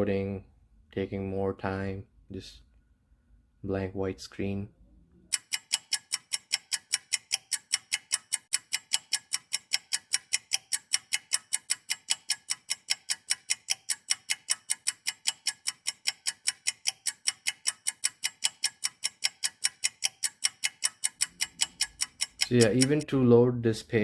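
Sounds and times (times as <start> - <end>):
clock ticking: 5.3 - 23.1.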